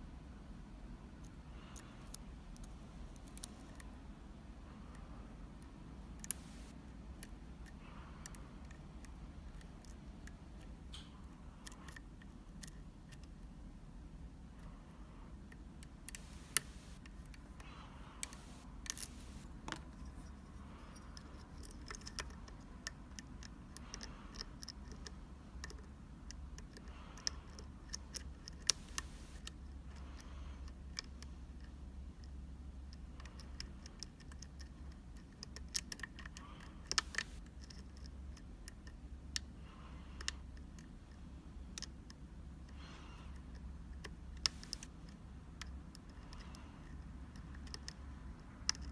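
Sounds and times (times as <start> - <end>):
low steady hum: 0.0 - 48.9.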